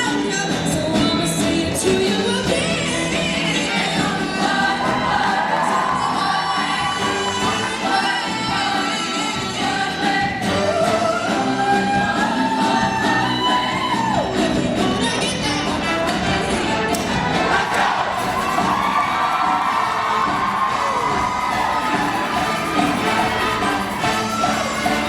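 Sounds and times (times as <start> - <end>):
instrumental backing music: 0.0 - 25.0
choir singing in harmony: 2.6 - 13.8, 15.8 - 18.7, 19.3 - 25.0.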